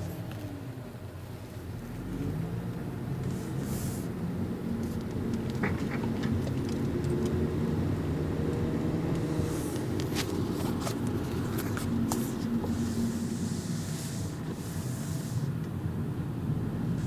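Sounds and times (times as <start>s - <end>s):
car engine and road drone: 0.0s - 17.0s
sharp clicks and creaks: 4.8s - 7.5s.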